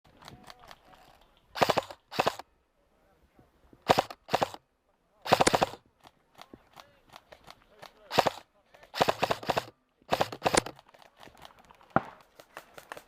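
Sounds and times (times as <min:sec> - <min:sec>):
airsoft gun firing bursts: 0:01.6 - 0:02.4, 0:03.9 - 0:04.6, 0:05.3 - 0:05.8, 0:07.1 - 0:13.0.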